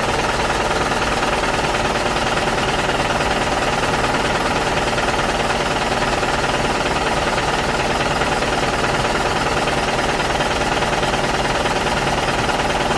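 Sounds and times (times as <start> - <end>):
engine running steadily: 0.0 - 12.9.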